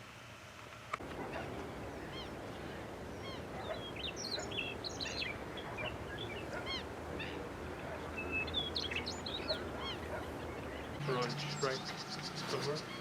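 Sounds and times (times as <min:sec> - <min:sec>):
songbirds chirping and whistling: 0:01.0 - 0:13.0.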